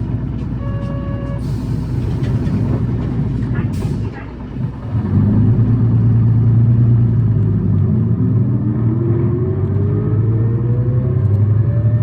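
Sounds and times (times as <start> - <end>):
bus diesel engine rumble: 0.0 - 12.0
rising engine whine: 4.6 - 12.0.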